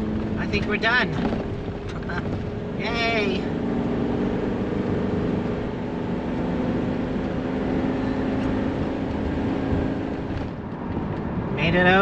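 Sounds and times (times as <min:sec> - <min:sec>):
motorhome engine humming: 0:00.0 - 0:12.0
road noise: 0:00.0 - 0:12.0.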